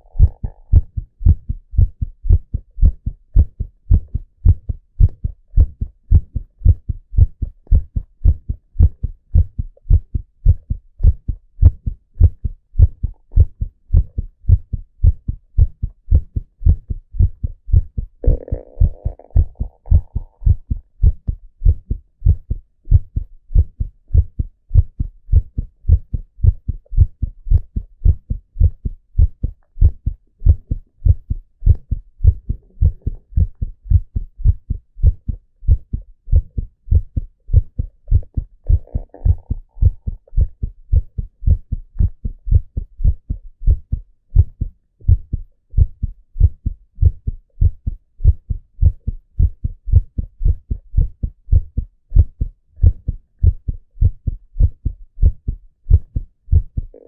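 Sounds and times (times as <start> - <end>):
heartbeat thuds: 0.0 - 57.0.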